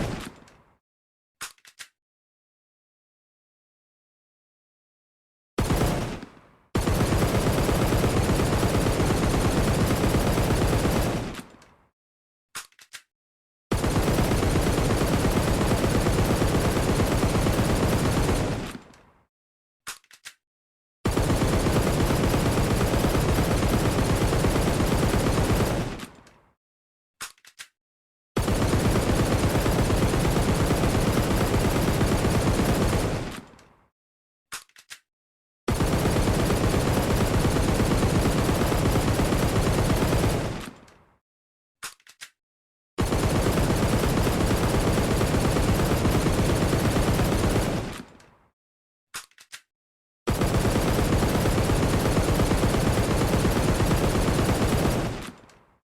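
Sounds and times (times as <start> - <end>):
gun clicks: 0.0 - 0.6, 1.4 - 2.0, 6.2 - 6.5, 11.3 - 11.8, 12.6 - 13.1, 18.6 - 19.0, 19.9 - 20.4, 27.2 - 27.8, 34.5 - 35.1, 40.6 - 41.0, 41.8 - 42.4, 47.9 - 48.3, 49.2 - 49.7, 55.2 - 55.6
automatic gunfire: 5.6 - 11.6, 13.7 - 18.9, 21.1 - 26.3, 28.4 - 33.6, 35.7 - 40.9, 43.0 - 48.2, 50.3 - 55.5.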